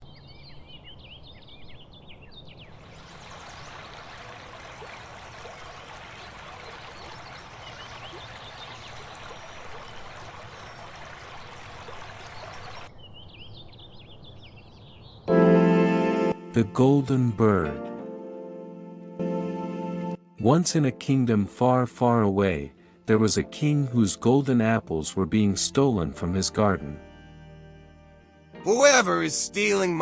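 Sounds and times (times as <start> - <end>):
birds chirping: 0.0 - 15.4
running water rushing: 2.8 - 12.9.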